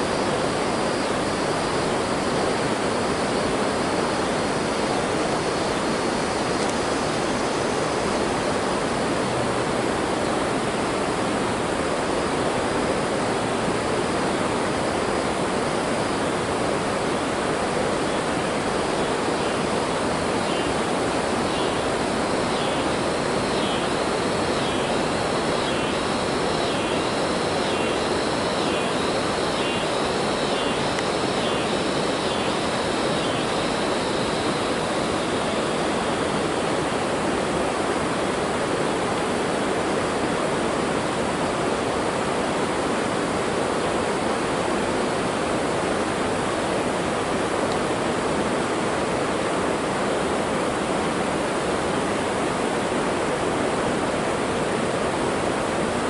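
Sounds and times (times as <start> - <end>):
steady rushing noise: 0.0 - 56.0
high-pitched chirping: 24.6 - 34.2.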